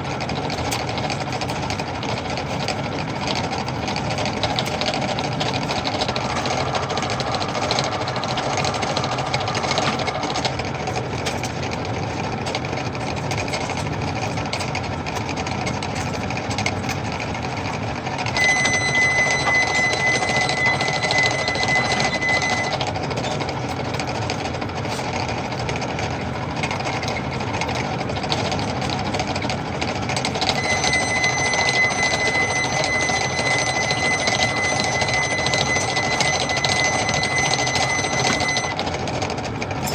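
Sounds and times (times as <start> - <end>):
high steady squeal: 3.4 - 11.8, 18.2 - 24.4, 30.3 - 38.8.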